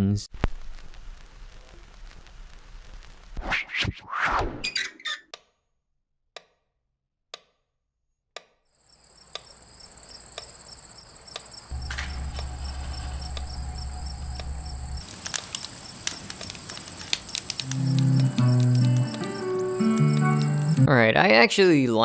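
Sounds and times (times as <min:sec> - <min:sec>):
crickets chirping: 0:08.8 - 0:20.9
low rumble: 0:11.7 - 0:17.2
soft clicks: 0:15.2 - 0:19.5.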